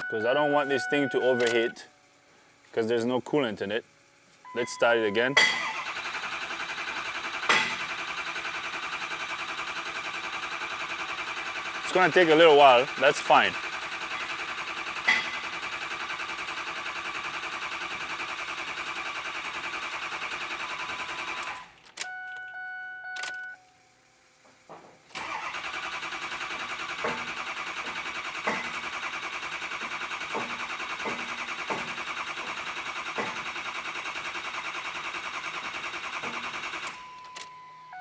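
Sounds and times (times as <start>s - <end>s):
short electronic tones: 0.0s - 1.9s, 4.5s - 5.5s
diesel engine cranking: 0.0s - 23.6s, 24.3s - 38.0s.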